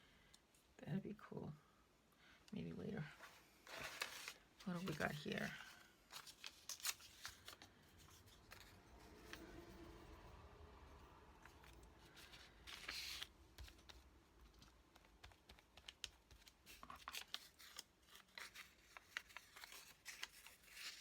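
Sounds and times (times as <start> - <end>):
paper rustling: 3.2 - 9.6, 11.4 - 21.0
paper taps and crinkles: 3.7 - 8.7, 11.4 - 21.0.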